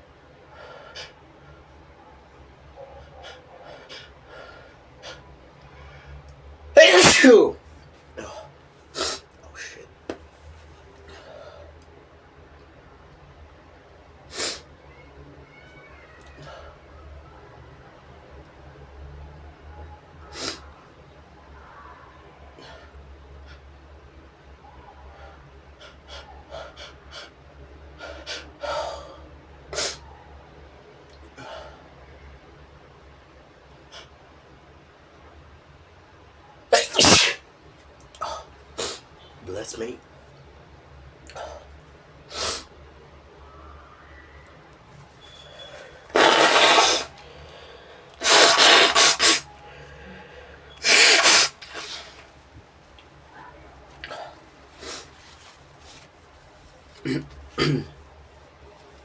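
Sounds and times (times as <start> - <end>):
person blowing nose: 6.8 - 7.5, 36.8 - 37.4, 45.7 - 47.6, 48.2 - 49.6, 50.8 - 52.2, 54.8 - 55.1
person sneezing: 6.8 - 7.6, 36.8 - 37.4, 45.7 - 47.2, 48.2 - 52.2, 57.0 - 58.0
person sniffing: 6.8 - 7.6, 36.8 - 37.4, 42.3 - 42.7, 45.7 - 52.3, 54.8 - 55.1
gasping inhale: 45.7 - 52.2.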